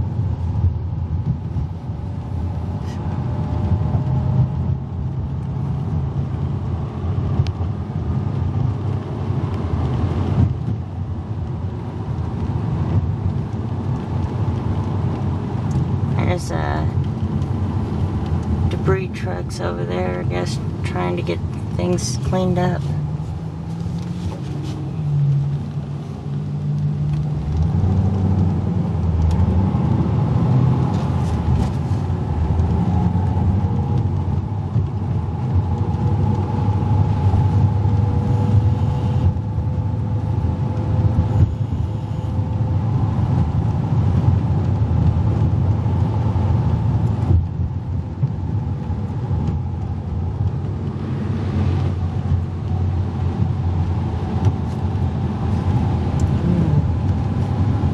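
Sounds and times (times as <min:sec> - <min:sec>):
road and engine rumble: 0:00.0 - 0:57.9
faint steady whine: 0:41.1 - 0:42.6.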